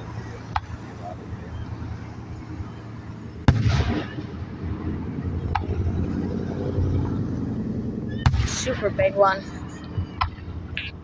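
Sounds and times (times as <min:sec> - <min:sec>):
low rumble: 0:03.4 - 0:10.8.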